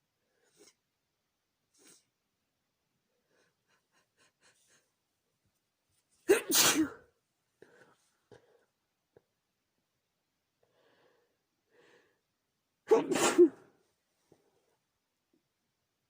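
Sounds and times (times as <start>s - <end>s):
woman sneezing: 6.3s - 7.0s, 12.9s - 13.6s.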